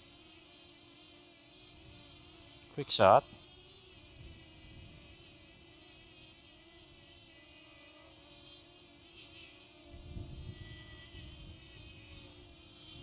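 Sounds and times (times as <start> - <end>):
drone propellers buzzing: 0.0 - 13.0
wind rumbling on microphone: 9.9 - 12.0.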